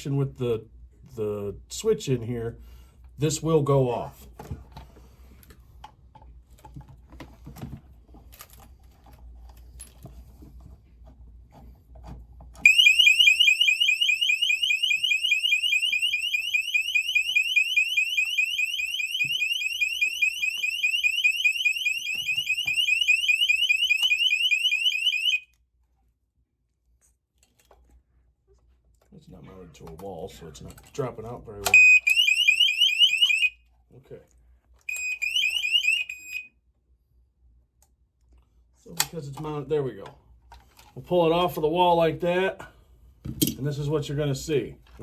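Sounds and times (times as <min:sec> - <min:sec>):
shrill door alarm warble: 0:12.6 - 0:25.5, 0:31.7 - 0:33.6, 0:34.9 - 0:36.5.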